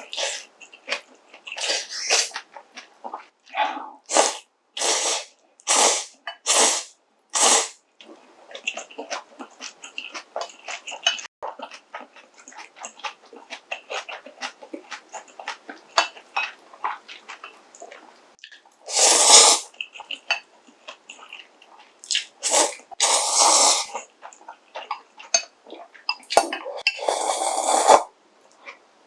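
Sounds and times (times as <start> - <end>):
slurping noodles: 0.0 - 0.5, 1.6 - 2.4, 3.1 - 7.8, 18.9 - 19.7, 22.1 - 24.1, 26.6 - 28.1
soft chewing: 0.0 - 4.1, 8.0 - 18.9, 19.7 - 27.0, 27.8 - 29.0.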